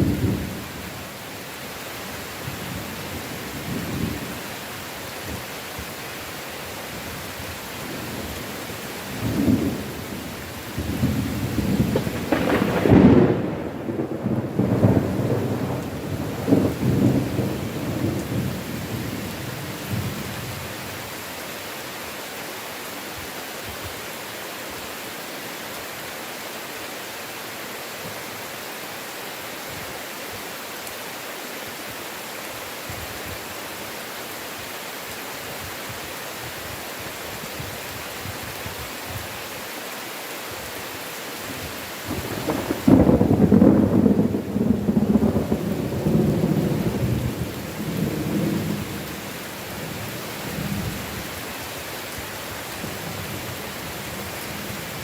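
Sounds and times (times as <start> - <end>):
heavy rain falling: 0.0 - 55.0
rolling thunder: 10.8 - 19.1, 42.1 - 49.2.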